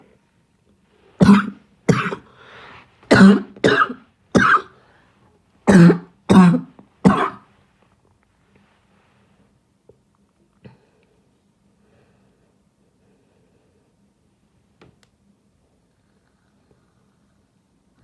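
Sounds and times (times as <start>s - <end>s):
person coughing: 1.2s - 2.3s, 3.1s - 4.8s, 5.7s - 7.4s.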